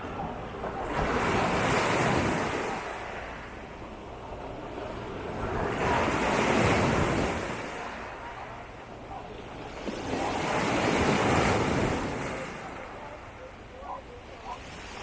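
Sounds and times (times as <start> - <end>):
small waves breaking on beach: 0.0 - 15.0.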